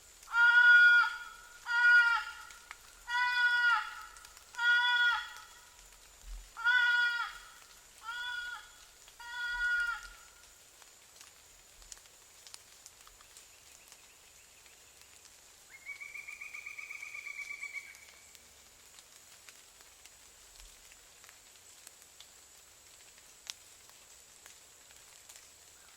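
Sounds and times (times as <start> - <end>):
higher quavering cry: 0.3 - 5.7, 6.6 - 10.3.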